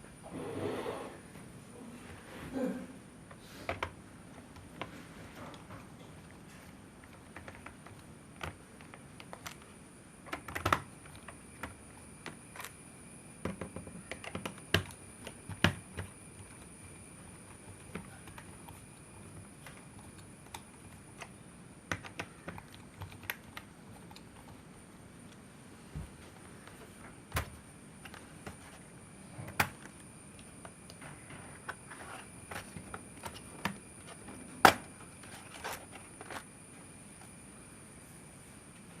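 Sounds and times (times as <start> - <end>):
laptop clicks and taps: 7.2 - 12.8, 13.4 - 16.7, 17.4 - 24.4.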